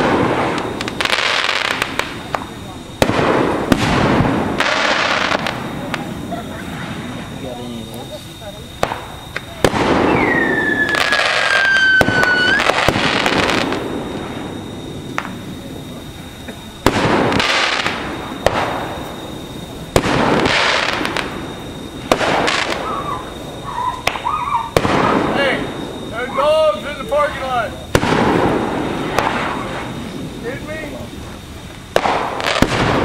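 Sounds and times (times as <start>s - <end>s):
fireworks bangs and crackling: 0.0s - 33.0s
firework whistle gliding down: 9.1s - 16.4s, 17.2s - 31.1s.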